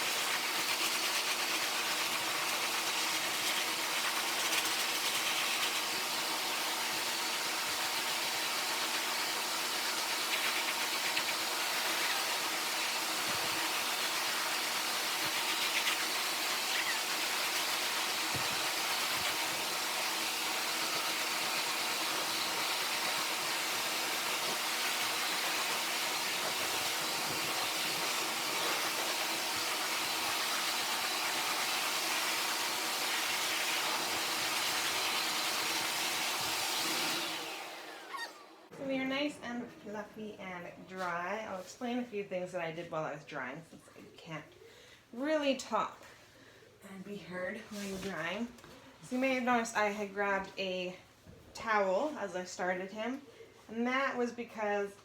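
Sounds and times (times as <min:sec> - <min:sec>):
blow dryer blowing air: 0:00.0 - 0:39.1.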